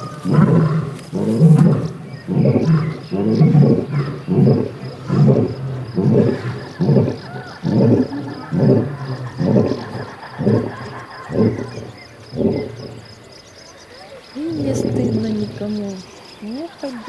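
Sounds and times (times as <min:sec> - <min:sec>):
lioness roaring: 0:00.0 - 0:13.1.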